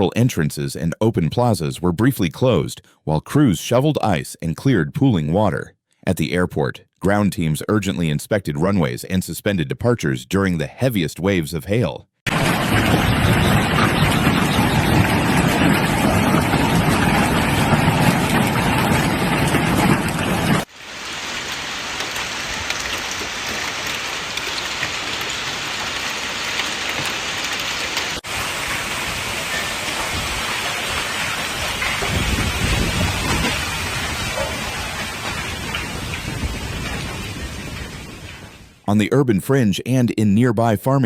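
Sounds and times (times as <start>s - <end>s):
hail and rain pelting down: 12.3s - 38.9s.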